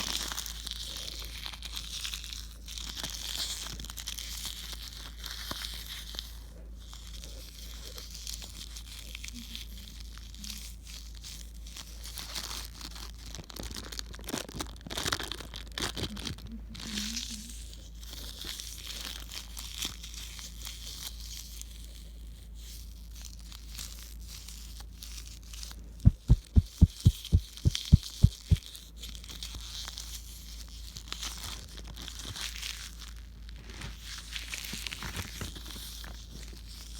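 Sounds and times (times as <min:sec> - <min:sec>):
low hum: 0:26.1 - 0:28.6
low thumps: 0:26.1 - 0:28.6.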